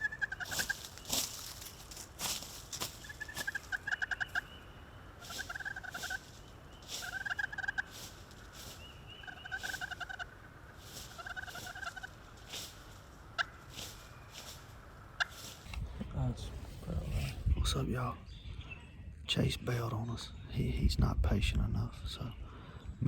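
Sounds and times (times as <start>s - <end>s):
rattling turkey calls: 0.0s - 15.7s.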